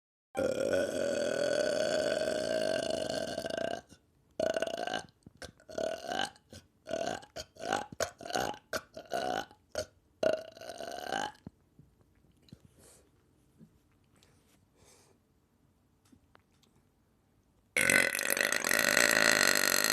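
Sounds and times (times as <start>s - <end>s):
person burping: 0.4s - 11.5s, 17.8s - 19.9s.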